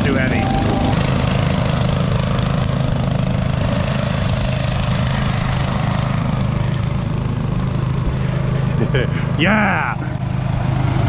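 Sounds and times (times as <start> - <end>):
go-kart engine running: 0.0 - 11.0.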